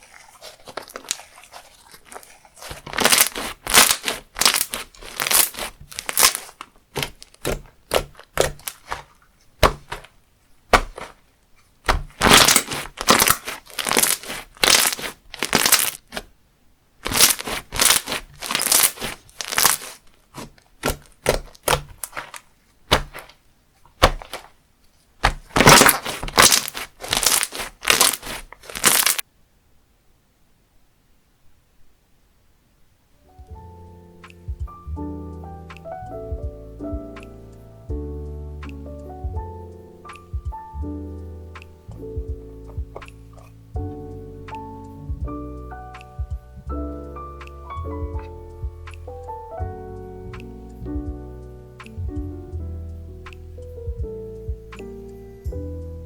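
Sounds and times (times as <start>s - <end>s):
slime squishing and crackling: 0.0s - 11.2s, 11.8s - 16.3s, 17.0s - 24.5s, 25.2s - 29.2s.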